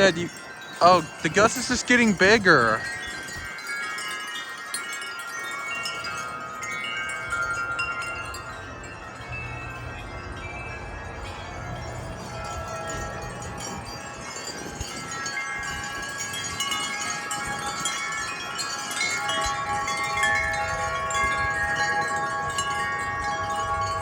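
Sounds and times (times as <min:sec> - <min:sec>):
wind chimes ringing: 0:00.0 - 0:24.0
gusty wind: 0:04.9 - 0:24.0.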